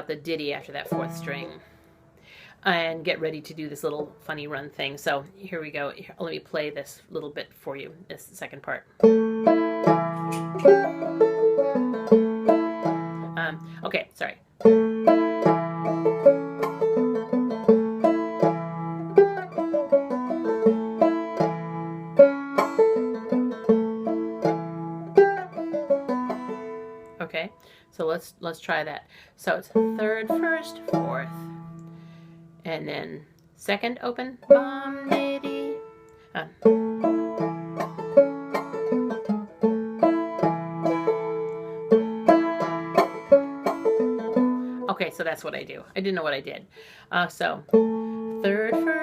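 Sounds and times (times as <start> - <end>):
banjo plucked: 0.0 - 1.8, 7.2 - 27.7, 29.4 - 46.4, 47.2 - 49.0.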